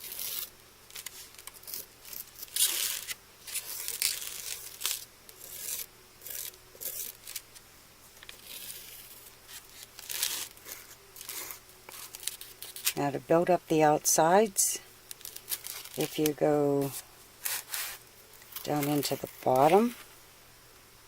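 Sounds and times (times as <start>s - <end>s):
stick scraping gritty mixture: 0.0s - 7.4s, 15.2s - 20.0s.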